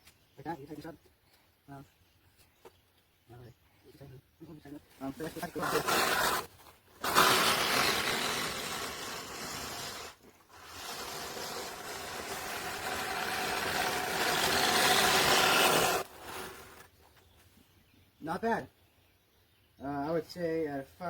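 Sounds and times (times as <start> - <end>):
reel mower whirring: 5.6 - 16.9.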